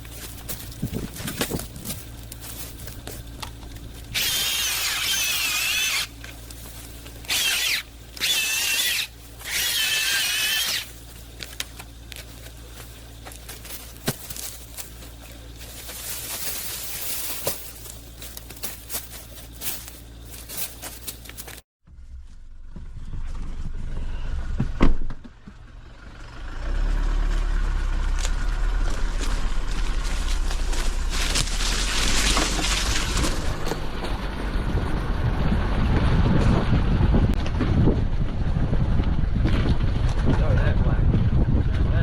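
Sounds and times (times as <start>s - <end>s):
power tool cutting wood: 4.1s - 6.1s, 7.3s - 10.9s.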